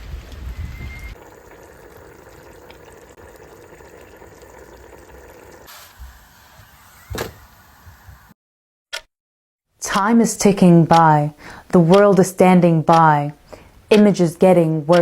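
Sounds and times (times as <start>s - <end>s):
pouring rainwater: 0.0s - 6.4s.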